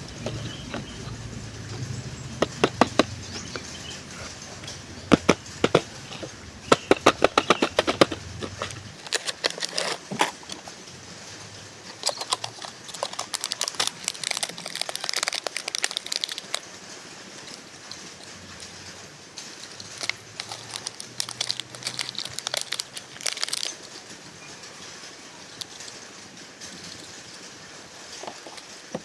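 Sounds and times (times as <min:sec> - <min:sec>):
packaging clicks and taps: 0:00.0 - 0:10.6, 0:11.9 - 0:16.6, 0:19.8 - 0:23.8
packaging crinkling: 0:00.0 - 0:10.8, 0:11.8 - 0:18.3, 0:19.7 - 0:24.0.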